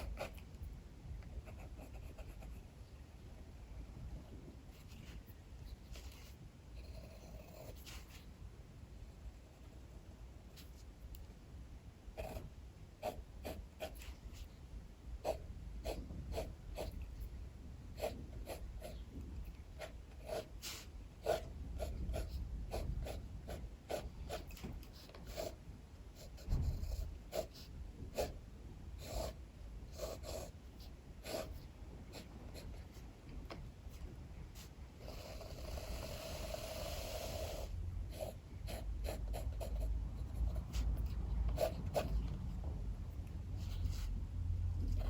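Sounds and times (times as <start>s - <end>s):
pencil scratching on paper: 0.0s - 0.5s, 1.4s - 2.7s, 12.2s - 14.5s, 15.2s - 17.2s, 18.0s - 19.2s, 19.8s - 25.6s, 26.2s - 28.4s, 29.0s - 33.1s, 38.1s - 42.4s.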